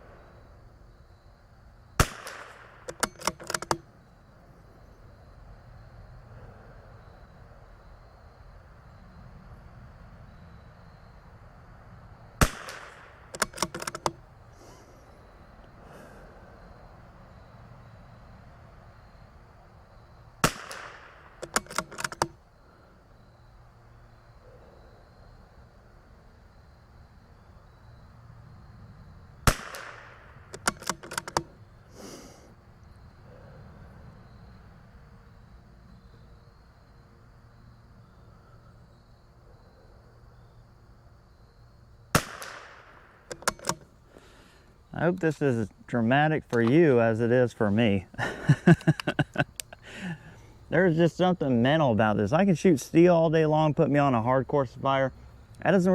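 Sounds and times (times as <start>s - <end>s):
rifle shot: 2.0s - 3.8s, 12.4s - 14.1s, 20.4s - 22.2s, 29.4s - 31.5s, 42.1s - 43.8s
rifle bolt metallic clicks: 2.0s - 3.9s, 12.4s - 14.2s, 20.4s - 22.4s, 29.5s - 31.6s, 42.2s - 43.9s, 46.5s - 46.8s.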